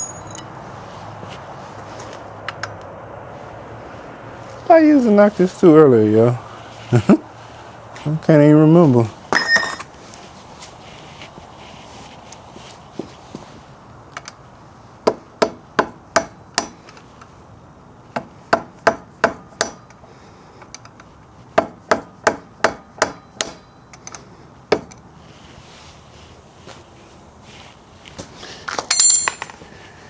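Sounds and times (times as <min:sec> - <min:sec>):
hammer striking metal: 0:00.0 - 0:00.5.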